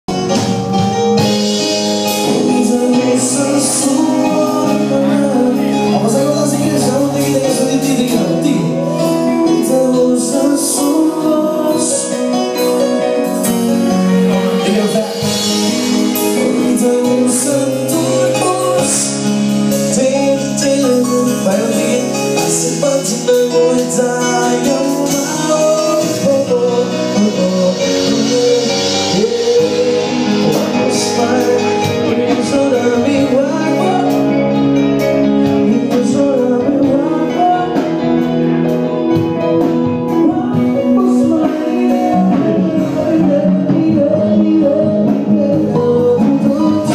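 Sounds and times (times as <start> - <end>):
song with singing and beat: 0.1 - 46.9.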